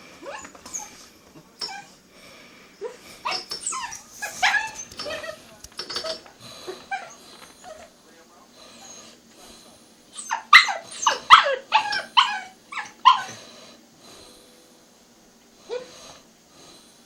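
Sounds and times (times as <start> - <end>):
puppy barking: 2.8 - 6.2, 10.2 - 13.4.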